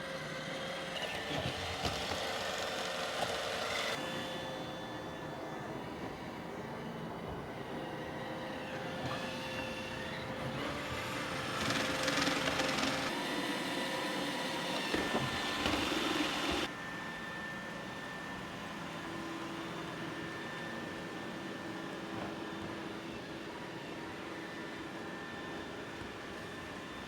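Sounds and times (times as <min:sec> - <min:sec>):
robot vacuum running: 0:00.0 - 0:27.0.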